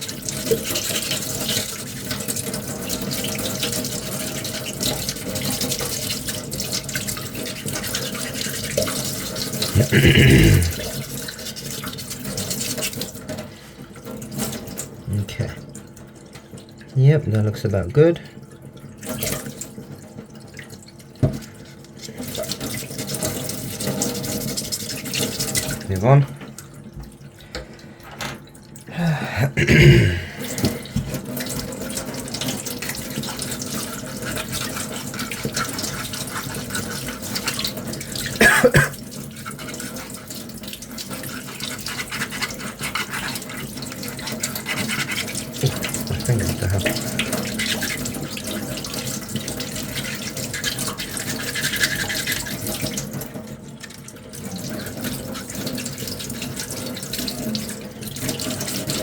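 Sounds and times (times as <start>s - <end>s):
sandpaper rubbing: 51.2s - 52.5s.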